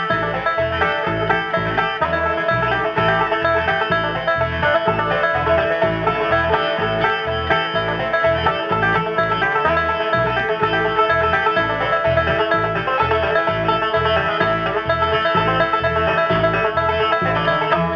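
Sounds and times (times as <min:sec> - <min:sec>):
banjo picking: 0:00.0 - 0:17.9
bass notes: 0:00.0 - 0:17.9
guitar: 0:00.0 - 0:17.9.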